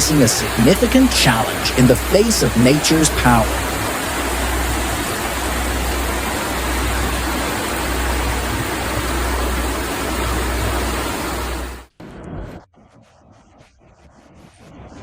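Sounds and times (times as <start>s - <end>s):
floodwater rushing: 0.0s - 11.9s.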